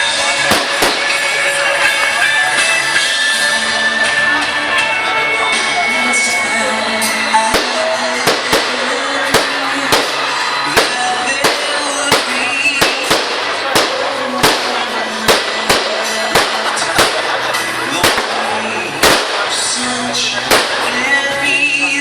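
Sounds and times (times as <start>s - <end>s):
fireworks bangs: 0.0s - 2.3s, 7.3s - 21.7s
loud music: 0.0s - 22.0s.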